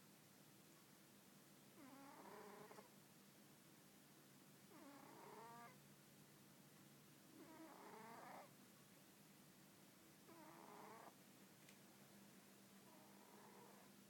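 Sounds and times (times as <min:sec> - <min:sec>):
cat snoring: 0:01.8 - 0:02.9, 0:04.7 - 0:05.8, 0:07.4 - 0:08.5, 0:10.3 - 0:11.2, 0:12.9 - 0:14.0.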